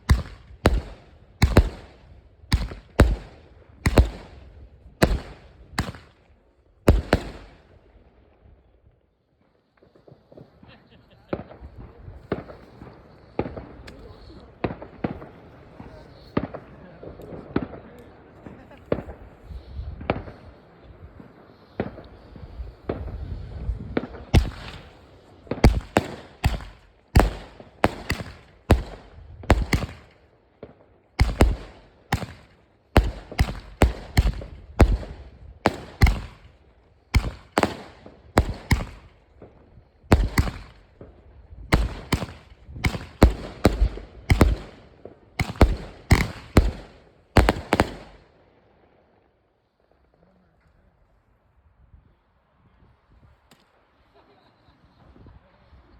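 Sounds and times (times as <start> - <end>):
fireworks banging: 0.0 - 6.2, 6.9 - 7.7, 21.2 - 48.2.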